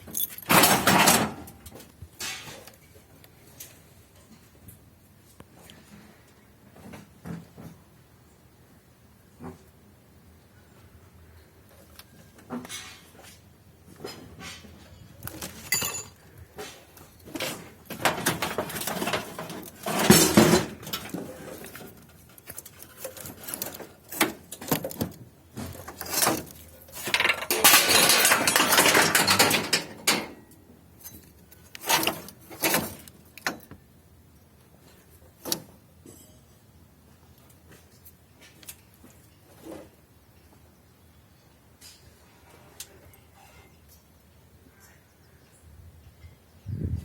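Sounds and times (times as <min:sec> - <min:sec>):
rough scraping and rattling: 0:00.0 - 0:02.8, 0:12.5 - 0:30.4, 0:31.0 - 0:33.7
scrap metal clanking: 0:00.1 - 0:01.6, 0:02.2 - 0:02.8, 0:14.0 - 0:33.2.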